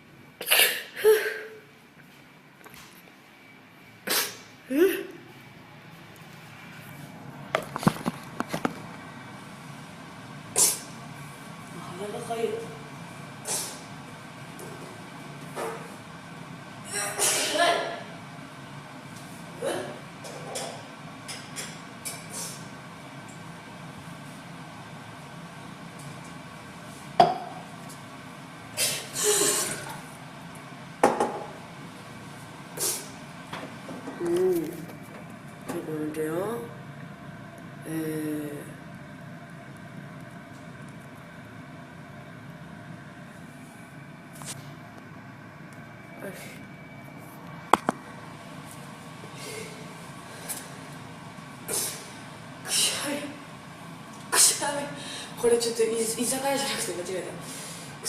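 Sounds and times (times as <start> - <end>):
woman sneezing: 0.4 - 1.6, 4.0 - 5.2, 16.9 - 18.1, 19.6 - 20.0, 28.8 - 29.9, 52.7 - 53.3, 54.3 - 54.7.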